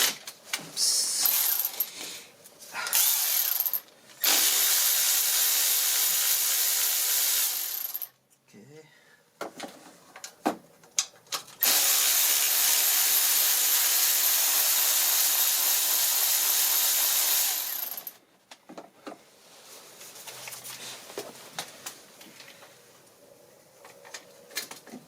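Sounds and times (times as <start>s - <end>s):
power tool running: 2.9s - 8.0s, 11.6s - 18.2s.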